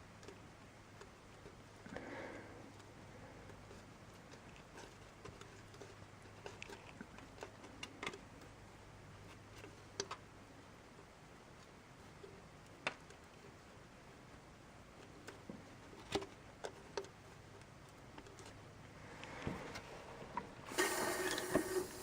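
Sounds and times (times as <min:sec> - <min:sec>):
low steady hum: 0:00.0 - 0:22.0
light clicks and taps: 0:00.1 - 0:02.1, 0:09.2 - 0:10.3, 0:10.9 - 0:13.8.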